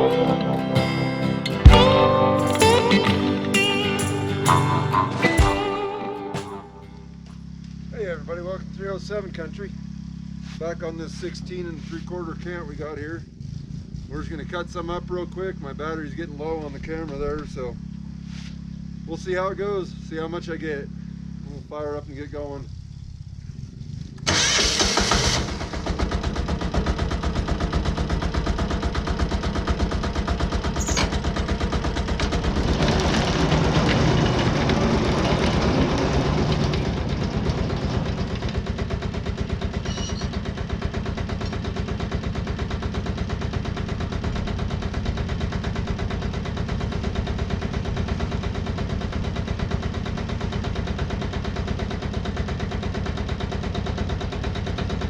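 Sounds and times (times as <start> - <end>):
sawmill engine running: 24.3 - 52.2.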